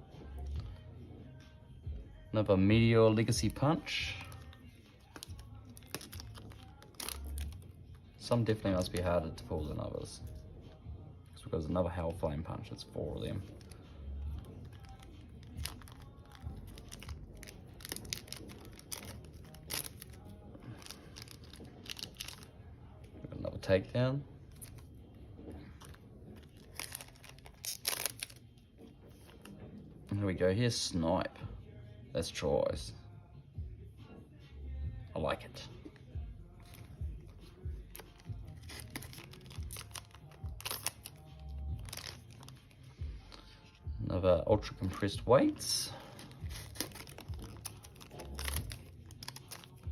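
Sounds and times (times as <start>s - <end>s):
background music: 0.0s - 49.9s
cards being handled: 3.1s - 10.4s, 12.0s - 23.7s, 24.4s - 29.6s, 35.8s - 43.9s, 44.6s - 49.9s
foil wrapper crinkling: 3.2s - 10.4s, 12.6s - 23.0s, 24.4s - 29.6s, 35.9s - 43.8s, 44.6s - 49.9s.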